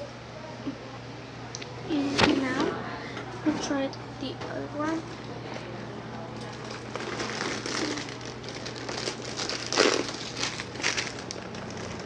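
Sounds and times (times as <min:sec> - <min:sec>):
snack packaging crinkling: 0:06.4 - 0:12.0.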